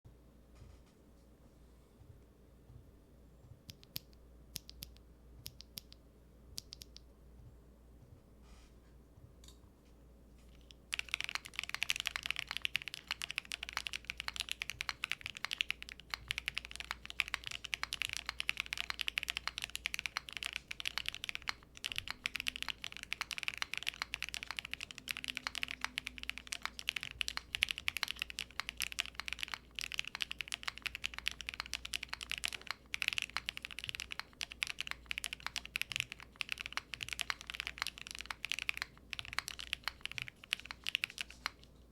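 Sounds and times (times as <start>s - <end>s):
mechanical keyboard typing: 6.6s - 7.0s, 10.5s - 41.7s.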